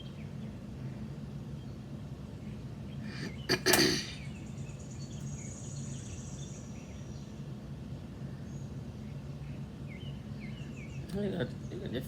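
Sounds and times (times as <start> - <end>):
steady low hum: 0.0 - 12.0
sharp click: 3.5 - 4.2.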